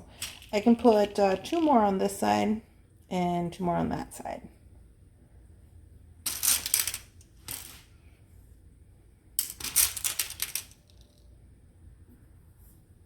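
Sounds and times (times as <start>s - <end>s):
beads clattering against tray: 0.1s - 1.9s, 6.3s - 7.9s, 9.4s - 11.2s.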